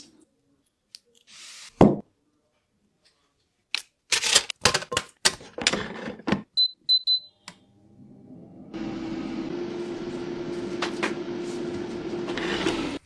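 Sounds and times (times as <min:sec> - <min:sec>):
electric appliance humming: 0:07.7 - 0:13.0.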